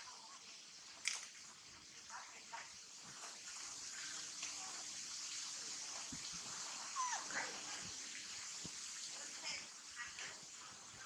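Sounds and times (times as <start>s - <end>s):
steady hiss: 0.0s - 11.0s.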